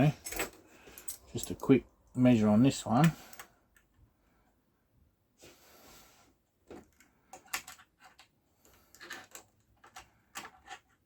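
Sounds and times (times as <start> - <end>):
clicks and knocks of small tools: 6.7 - 11.0.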